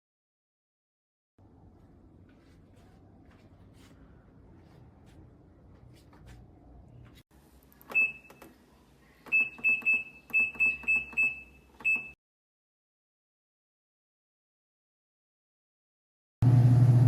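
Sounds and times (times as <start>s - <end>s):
control panel beeping: 7.8s - 8.5s, 9.3s - 12.2s.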